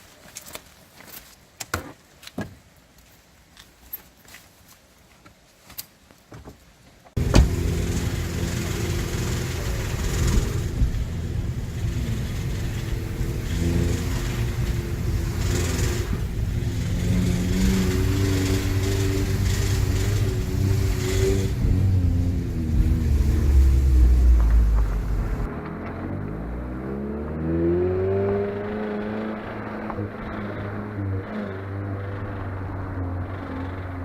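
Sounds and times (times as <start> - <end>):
car engine starting and running: 7.2 - 34.0.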